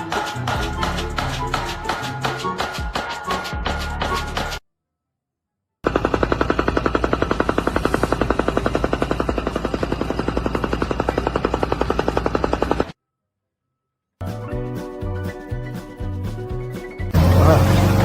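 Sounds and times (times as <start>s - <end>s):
power tool hammering rapidly: 5.8s - 13.0s.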